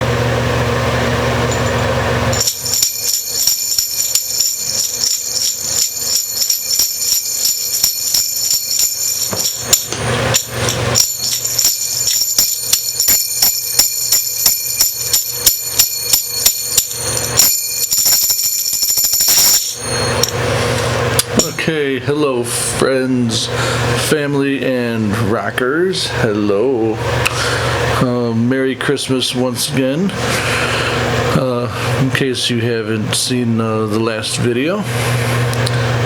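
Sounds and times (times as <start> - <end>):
low steady hum: 0.0 - 36.0
jingle bells shaken: 1.5 - 21.6.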